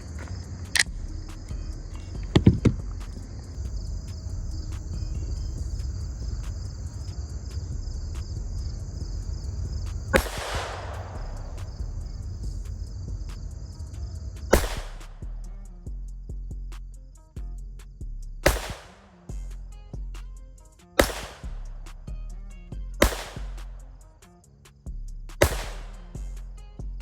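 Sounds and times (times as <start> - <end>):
crickets chirping: 0.0 - 27.0
pistol shots: 10.1 - 11.9, 14.5 - 15.2, 18.4 - 19.2, 21.0 - 21.7, 23.0 - 23.9, 25.4 - 26.1.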